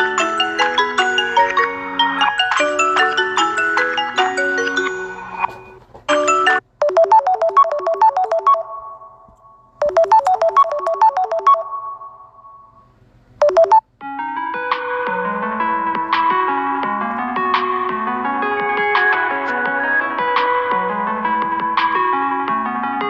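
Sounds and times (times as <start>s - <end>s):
phone ringtone melody: 0.0s - 15.9s
snippets of other tones: 0.0s - 22.6s.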